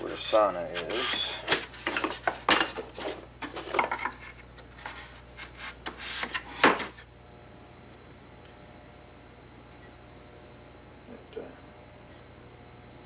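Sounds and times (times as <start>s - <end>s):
wood scraping against wood: 0.0s - 7.1s
faint steady hum: 0.0s - 13.0s.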